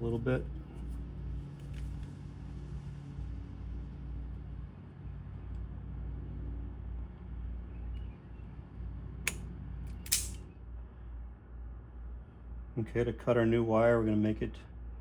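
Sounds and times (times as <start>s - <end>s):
low rumble and hum: 0.0s - 15.0s.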